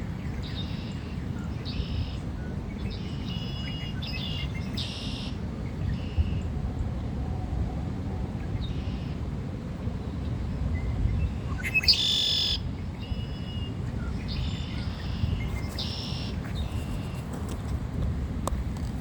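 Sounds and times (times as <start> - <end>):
songbirds singing: 0.0 - 7.2, 8.1 - 9.3, 10.0 - 17.8
steady low rumble: 5.6 - 11.6.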